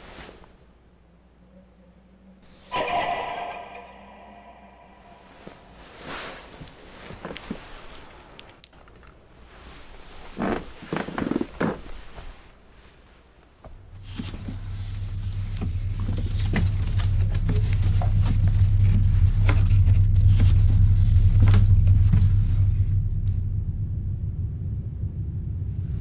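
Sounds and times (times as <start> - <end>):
deep low rumble: 14.0 - 26.0.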